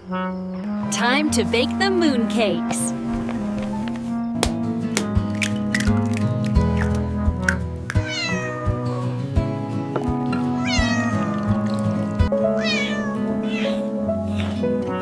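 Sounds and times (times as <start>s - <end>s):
background music: 0.0s - 15.0s
cat meowing: 8.0s - 9.2s, 10.6s - 11.6s, 12.6s - 14.0s.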